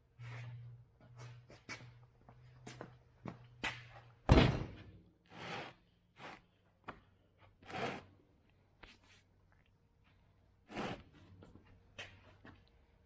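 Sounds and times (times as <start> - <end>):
heavy metal thunk: 4.3 - 4.8.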